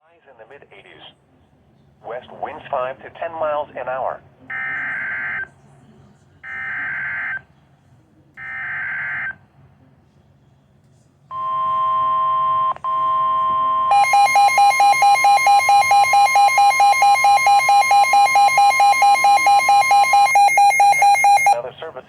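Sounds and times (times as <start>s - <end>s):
rapidly pulsing alert beeps: 12.4s - 21.6s
steady electronic alert tone: 13.8s - 21.6s.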